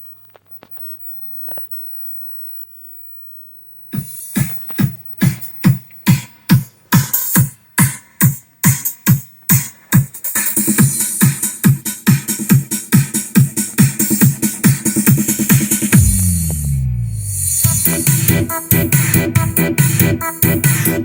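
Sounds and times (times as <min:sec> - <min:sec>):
electronic dance music: 0:04.0 - 0:21.0
heavy kick drum: 0:10.8 - 0:21.0.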